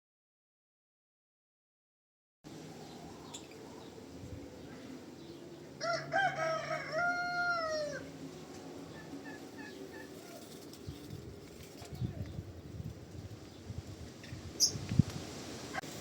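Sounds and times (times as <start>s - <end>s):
rooster crowing: 5.8s - 8.2s.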